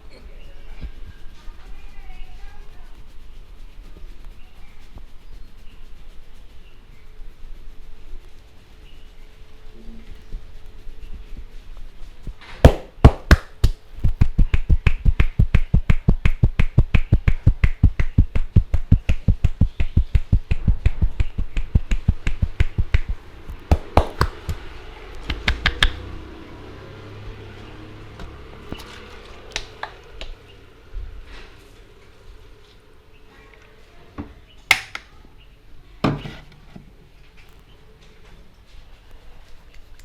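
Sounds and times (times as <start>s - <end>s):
hands slapping a head: 12.6s - 26.0s
single sharp pops: 12.7s - 13.8s, 19.1s - 24.6s.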